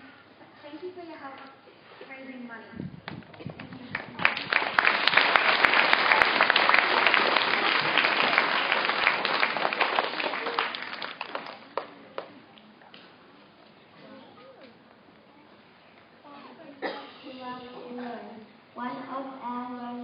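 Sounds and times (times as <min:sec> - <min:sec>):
audience applauding: 0:03.1 - 0:12.4.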